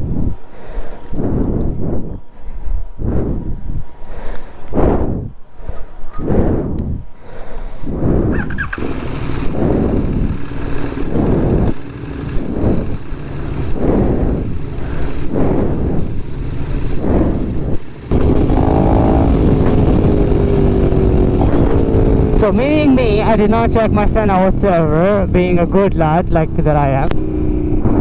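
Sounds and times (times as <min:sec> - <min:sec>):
motorcycle engine running: 0:08.3 - 0:26.2.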